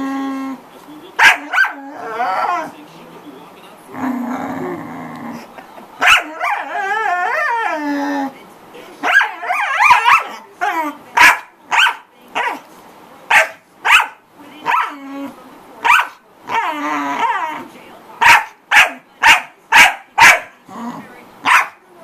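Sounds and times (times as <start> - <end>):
dog barking: 1.2 - 1.8, 6.0 - 6.7, 9.0 - 10.4, 11.2 - 12.6, 13.3 - 15.0, 15.8 - 16.2, 18.2 - 20.6, 21.4 - 21.8
dog howling: 1.3 - 2.7, 6.1 - 8.3.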